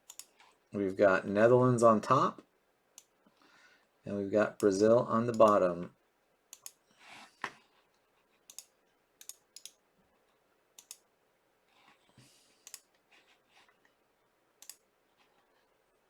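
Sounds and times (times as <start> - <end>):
computer mouse clicks: 0.0 - 0.6, 6.5 - 6.8, 8.4 - 9.8, 10.8 - 11.1, 12.6 - 13.0, 14.6 - 14.8.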